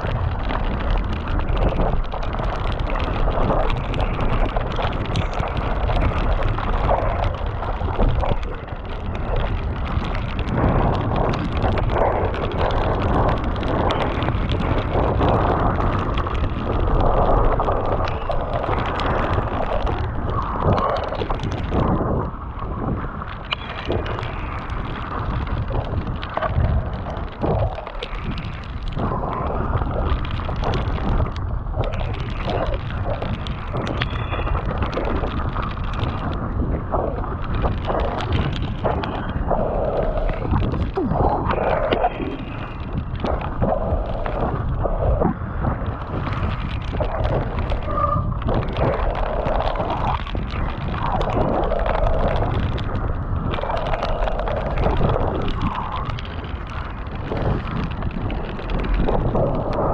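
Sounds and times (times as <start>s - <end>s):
bike frame and chain rattling: 0.0s - 59.9s
bike tyre noise: 0.0s - 59.9s
wind on microphone: 0.0s - 59.9s.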